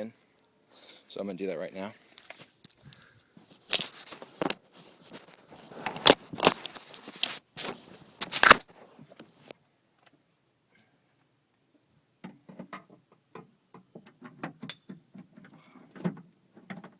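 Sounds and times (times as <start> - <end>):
scraping and rustling: 1.8 - 9.5.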